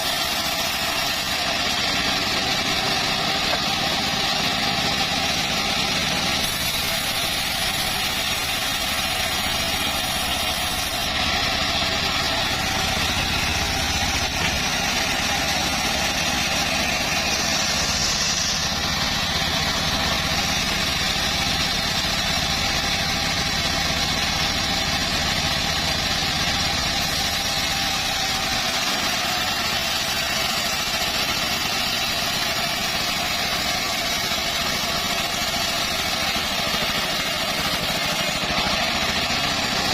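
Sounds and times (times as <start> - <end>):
circular saw cutting wood: 0.0 - 39.9.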